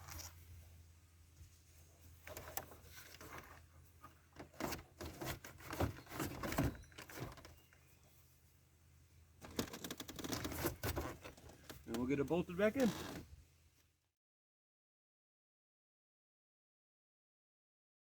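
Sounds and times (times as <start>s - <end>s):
knocks and scraping rattles: 2.1s - 7.9s, 9.4s - 13.3s.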